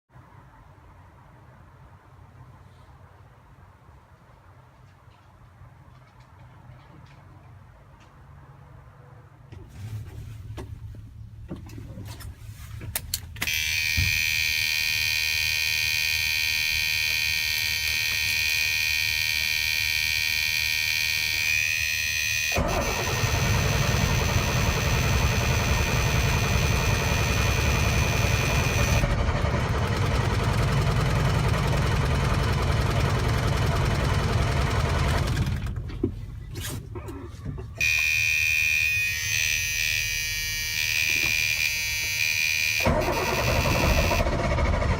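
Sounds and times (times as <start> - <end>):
steady high whine: 13.7 - 29.1, 37.8 - 44.3
diesel truck engine rumble: 22.6 - 37.8, 42.8 - 44.9.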